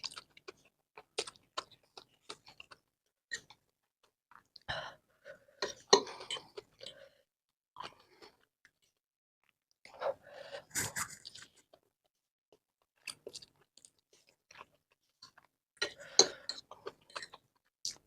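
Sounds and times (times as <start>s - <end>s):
person chewing noodles: 0.0s - 4.6s, 7.8s - 9.6s, 13.0s - 18.0s.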